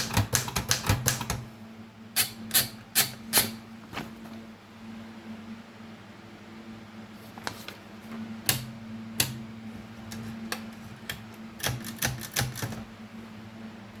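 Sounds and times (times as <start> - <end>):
manual typewriter key strikes: 0.0 - 1.4, 11.6 - 12.8.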